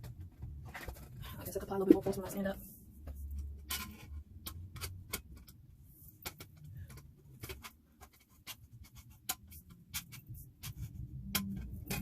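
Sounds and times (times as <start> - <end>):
clicks and knocks of metal tubes: 0.0 - 12.0.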